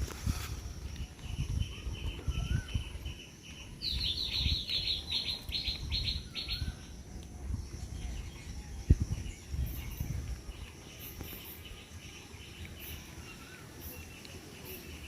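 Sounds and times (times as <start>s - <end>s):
bird chirping: 0.8s - 7.0s.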